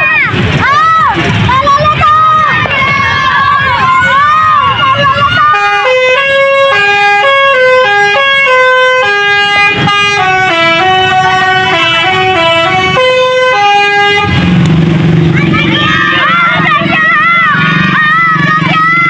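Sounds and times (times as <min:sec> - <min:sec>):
multi-tone bus horn: 0:02.8 - 0:14.7.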